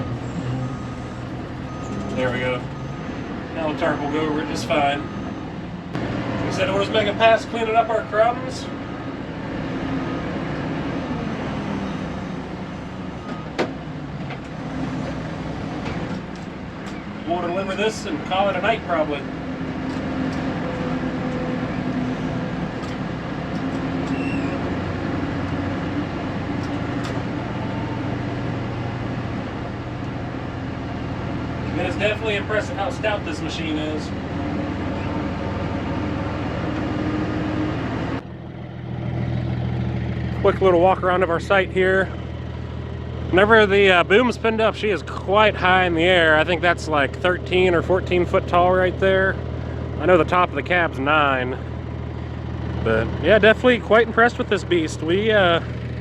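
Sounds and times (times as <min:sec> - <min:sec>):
diesel engine low idle: 0:00.0 - 0:56.0
diesel engine running: 0:00.0 - 0:56.0.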